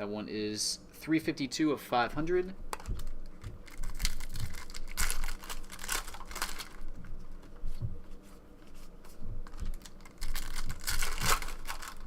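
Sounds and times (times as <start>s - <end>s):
cards and foil wrapper crinkling: 2.8s - 6.9s, 9.4s - 12.0s.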